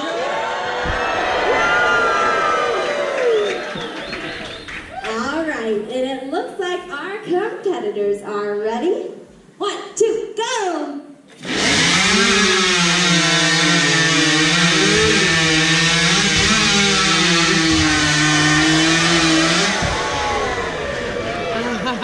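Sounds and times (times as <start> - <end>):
chainsaws cutting logs: 11.3 - 22.0.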